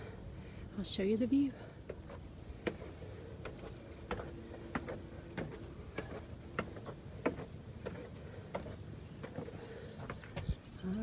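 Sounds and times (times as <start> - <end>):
footsteps tapping: 2.6 - 10.6.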